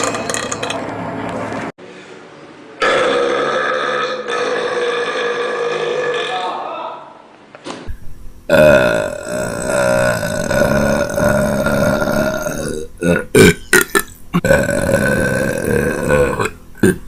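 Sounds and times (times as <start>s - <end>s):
man belching loudly: 2.8s - 6.6s, 8.5s - 17.0s.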